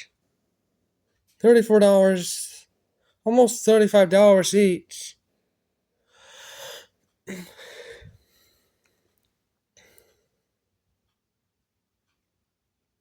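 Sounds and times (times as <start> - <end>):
person breathing: 6.0 - 9.2.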